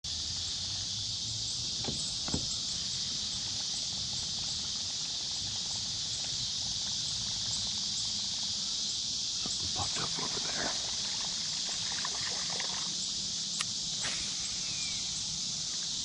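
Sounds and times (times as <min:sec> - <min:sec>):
insects chirping: 0:00.0 - 0:16.0.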